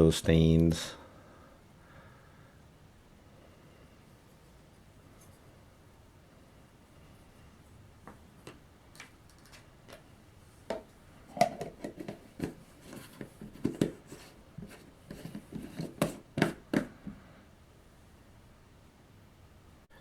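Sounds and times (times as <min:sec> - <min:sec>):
objects knocking and clattering: 0:10.7 - 0:17.2.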